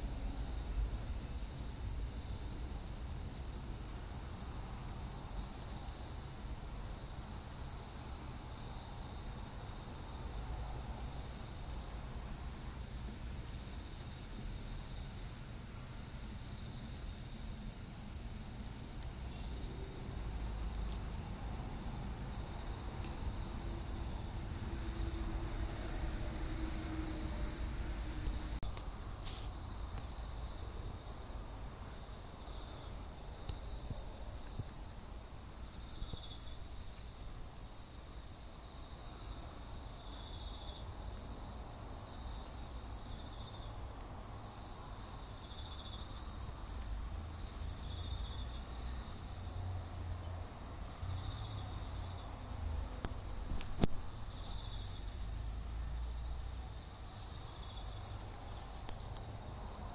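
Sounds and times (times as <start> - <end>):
soft insect chirp: 0.0 - 59.9
insect trilling: 28.6 - 59.9.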